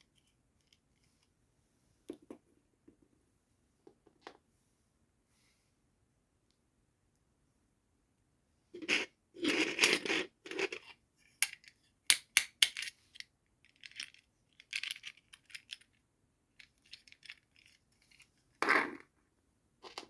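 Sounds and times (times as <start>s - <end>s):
plastic toy pieces clicking: 11.4s - 12.9s, 13.7s - 15.9s.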